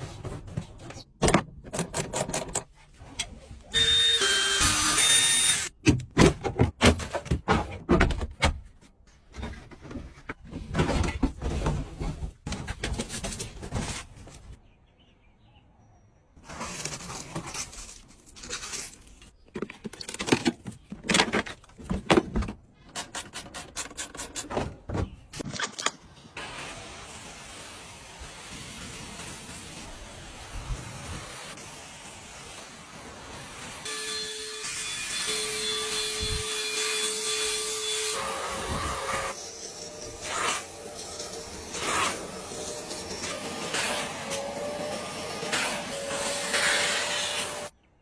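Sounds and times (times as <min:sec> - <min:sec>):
objects being handled: 0:16.4 - 0:26.2.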